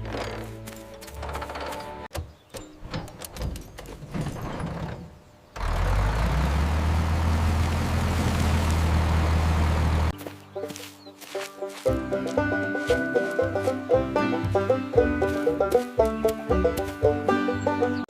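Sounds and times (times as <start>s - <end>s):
engine running with deep hum: 5.2s - 10.4s.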